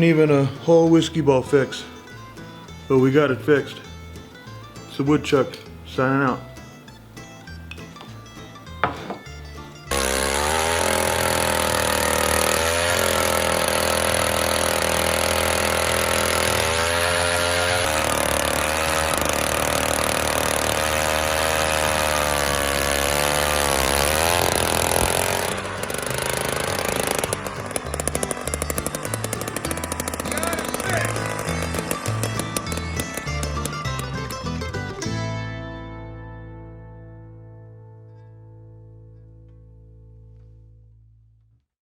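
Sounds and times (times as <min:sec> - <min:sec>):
small gas engine revving: 0:09.9 - 0:34.9.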